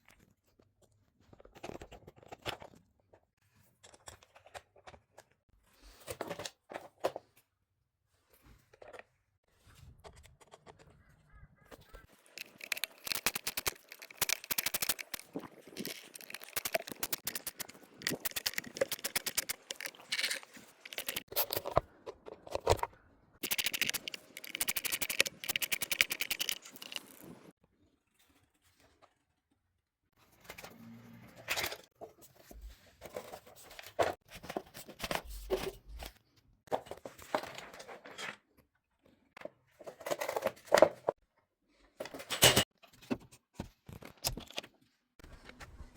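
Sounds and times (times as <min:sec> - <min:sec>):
plastic parts clicking and rattling: 0:00.1 - 0:05.4, 0:09.9 - 0:11.1, 0:11.7 - 0:27.5, 0:39.4 - 0:41.2.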